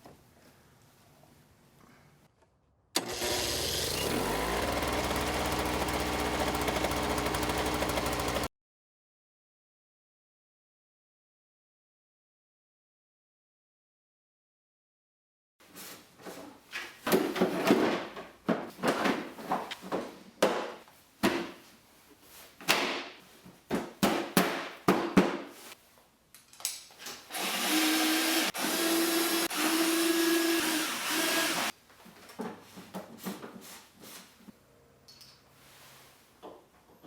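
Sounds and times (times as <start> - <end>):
small electric motor whirring: 3.0 - 8.5, 27.3 - 31.7.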